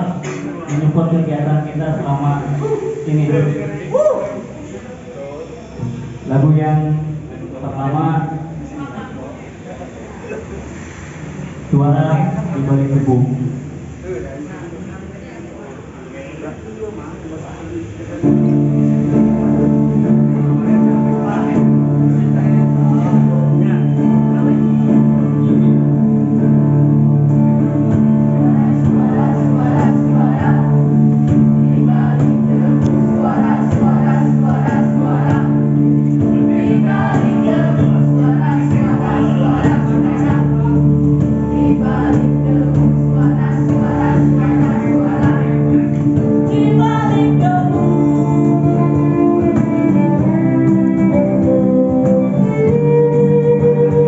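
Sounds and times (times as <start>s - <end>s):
sustained low notes: 18.1s - 54.0s
band playing: 18.2s - 54.0s.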